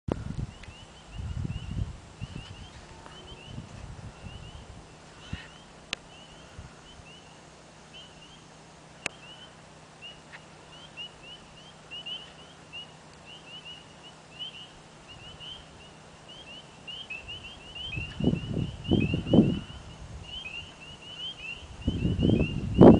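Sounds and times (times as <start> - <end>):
frogs chirping: 0.5 - 22.9.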